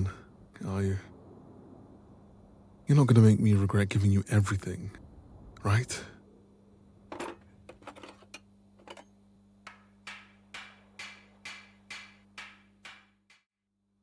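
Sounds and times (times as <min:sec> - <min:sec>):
knocking: 0:08.8 - 0:13.4.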